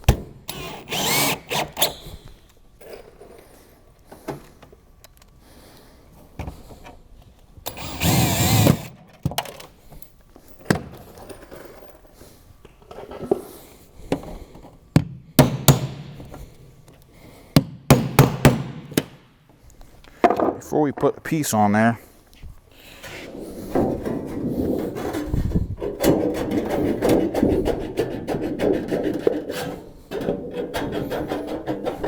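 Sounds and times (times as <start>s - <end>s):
drill running: 0.5s - 2.0s, 7.7s - 8.9s.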